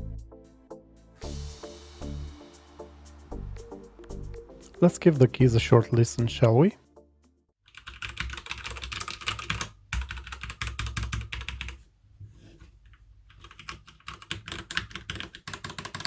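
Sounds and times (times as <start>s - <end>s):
mechanical keyboard typing: 7.7s - 11.8s, 13.3s - 16.0s.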